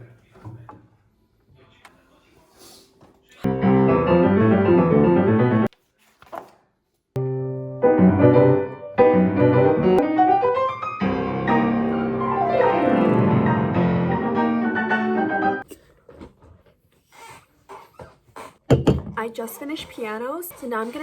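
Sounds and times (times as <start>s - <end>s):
piano playing: 3.5s - 5.7s, 7.2s - 15.6s.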